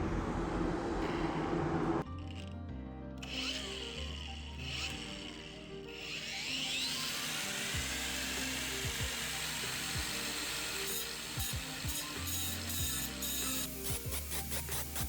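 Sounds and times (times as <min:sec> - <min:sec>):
background music: 0:01.9 - 0:15.0
angle grinder whining and grinding: 0:03.2 - 0:13.9.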